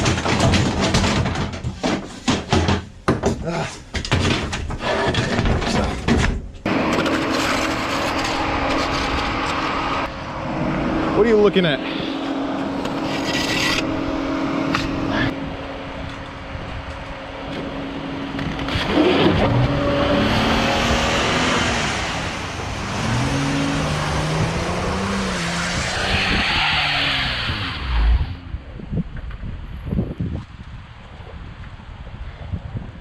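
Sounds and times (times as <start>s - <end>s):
tyres spinning in snow: 3.5s - 11.4s
engine revving: 6.7s - 15.6s, 17.6s - 28.5s.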